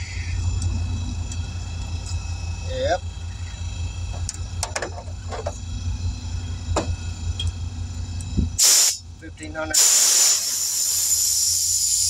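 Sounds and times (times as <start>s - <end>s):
steady low hum: 0.0s - 12.0s
clicks and knocks of tire tools: 4.1s - 5.6s
air hiss: 8.6s - 9.0s, 9.8s - 12.0s.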